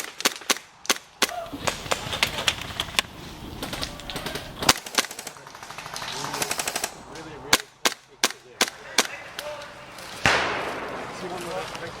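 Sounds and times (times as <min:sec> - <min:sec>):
airsoft guns firing: 0:00.0 - 0:02.6, 0:03.5 - 0:09.2, 0:10.2 - 0:11.7
faint voices: 0:03.6 - 0:12.0.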